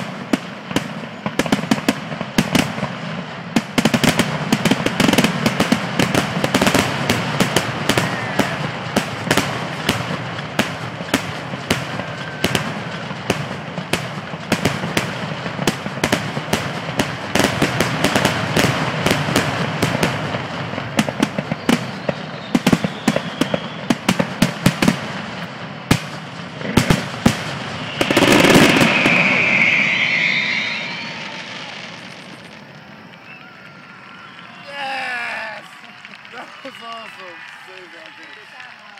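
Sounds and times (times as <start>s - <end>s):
fireworks bangs and crackles: 0.0s - 38.9s
sustained rush of sound: 26.2s - 34.7s.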